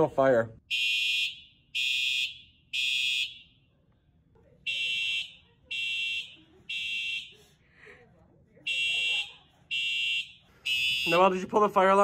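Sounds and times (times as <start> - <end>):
fire alarm buzzing blasts: 0.6 - 3.6, 4.7 - 7.4, 8.7 - 11.5.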